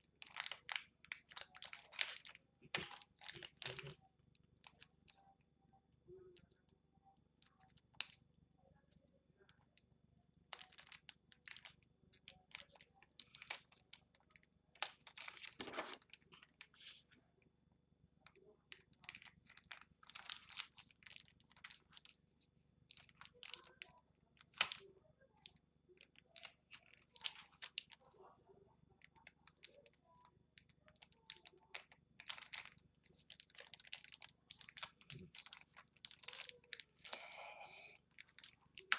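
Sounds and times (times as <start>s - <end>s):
plastic packaging crinkling: 0.1s - 4.0s, 10.5s - 17.2s, 18.3s - 22.2s, 22.9s - 28.1s, 29.0s - 38.9s.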